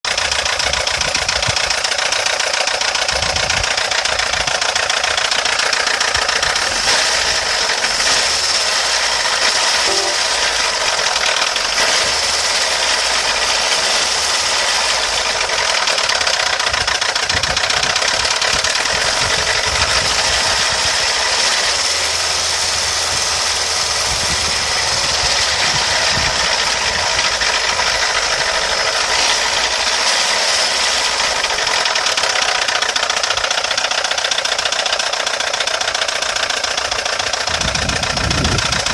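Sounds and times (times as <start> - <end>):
car engine idling: 0.0 - 38.9.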